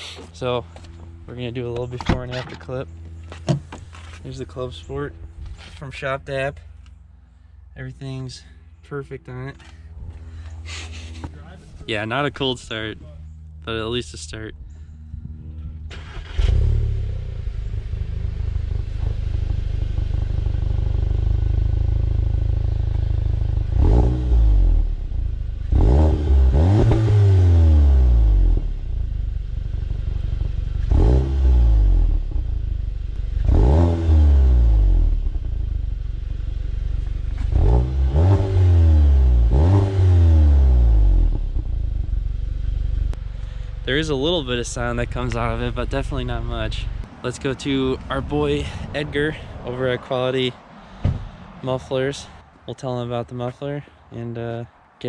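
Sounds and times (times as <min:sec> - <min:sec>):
car engine starting and revving: 0:15.4 - 0:51.0.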